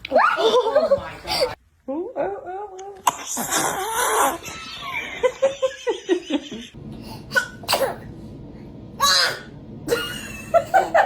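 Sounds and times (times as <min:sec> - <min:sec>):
baby sneezing: 0:07.3 - 0:08.1.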